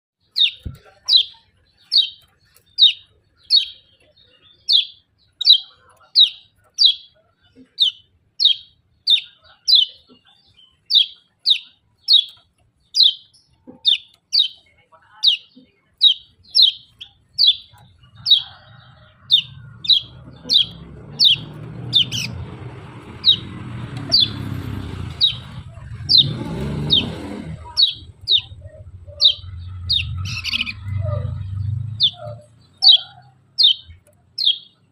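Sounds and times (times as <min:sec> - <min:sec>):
songbird chirping: 0:00.2 - 0:34.9
low rumble: 0:18.0 - 0:32.8.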